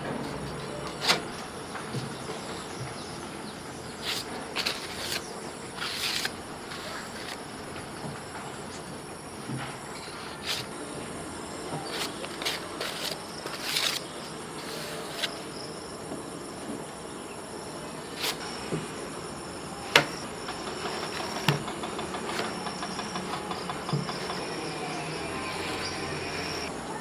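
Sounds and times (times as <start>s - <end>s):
sharp clicks and knocks: 19.9s - 26.7s.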